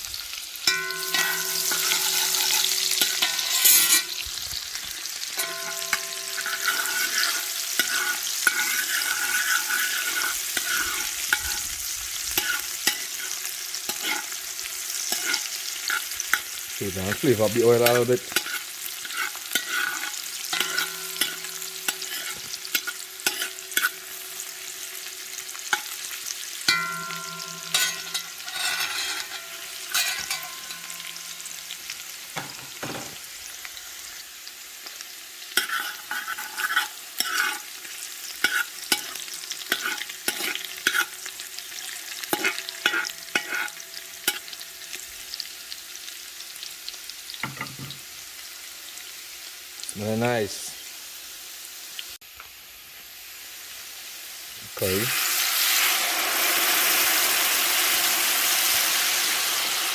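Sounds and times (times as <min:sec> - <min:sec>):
vegetables sizzling in hot oil: 0:00.0 - 0:59.9
spoon stirring against pot: 0:00.6 - 0:24.6, 0:25.4 - 0:31.8, 0:35.6 - 0:44.9.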